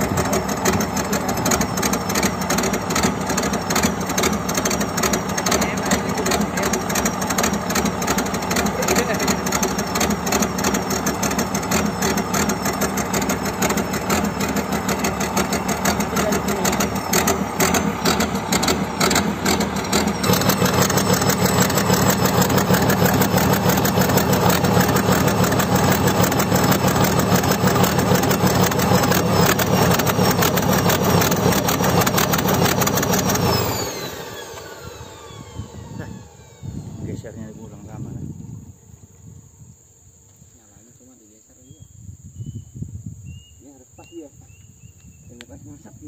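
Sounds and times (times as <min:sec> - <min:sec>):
excavator diesel engine running: 0:00.0 - 0:38.3.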